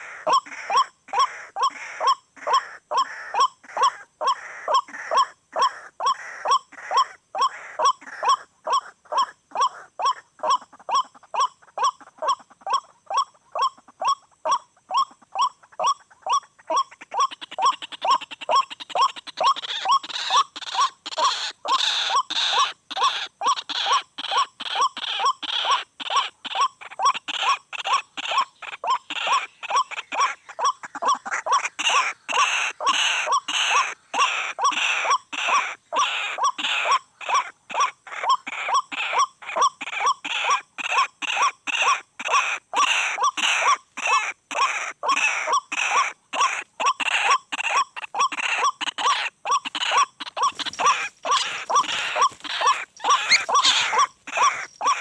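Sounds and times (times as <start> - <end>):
waterhen calling harsh notes: 42.4 - 55.0.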